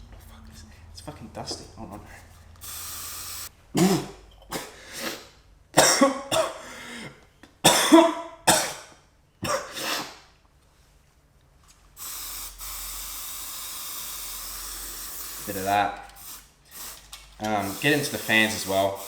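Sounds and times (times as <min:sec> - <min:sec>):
spray can hissing: 0:02.5 - 0:03.5, 0:12.0 - 0:19.0
person coughing hard: 0:03.7 - 0:05.2, 0:05.8 - 0:10.2.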